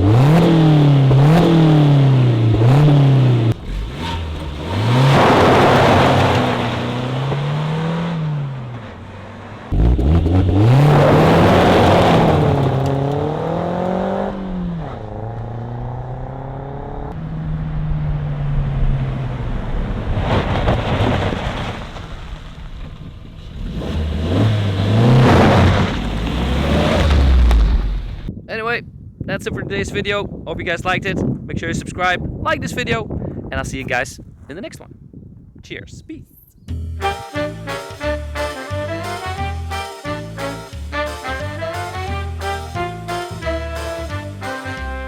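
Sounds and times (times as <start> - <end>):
car engine accelerating: 0.0 - 21.7, 23.4 - 28.3.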